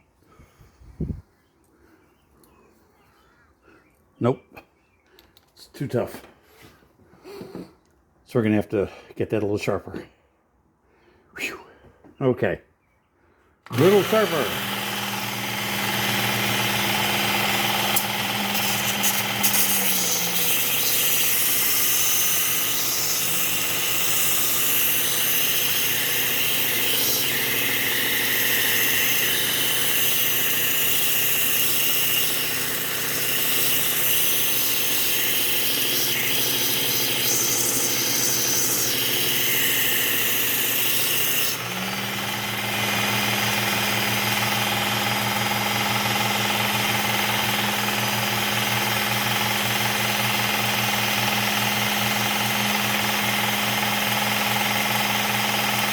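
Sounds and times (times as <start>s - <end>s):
belt sharpener motor hum: 13.6s - 55.9s
blade grinding on belt: 13.7s - 55.9s.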